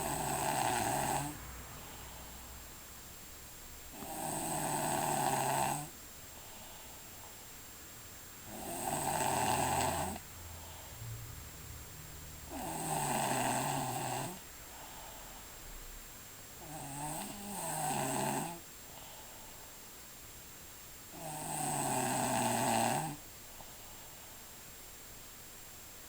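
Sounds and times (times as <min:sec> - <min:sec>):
person snoring loudly: 0:00.0 - 0:01.4, 0:04.0 - 0:05.9, 0:08.5 - 0:10.2, 0:12.5 - 0:14.4, 0:16.6 - 0:18.6, 0:21.2 - 0:23.2
quiet breathing: 0:00.0 - 0:03.2, 0:03.8 - 0:07.8, 0:08.4 - 0:20.2, 0:22.8 - 0:24.8.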